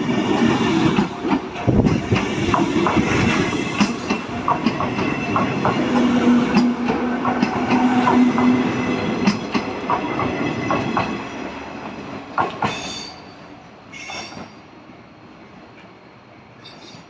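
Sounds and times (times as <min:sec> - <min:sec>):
train hum: 0:00.0 - 0:17.0
wheels clicking over rail joints: 0:00.3 - 0:08.5.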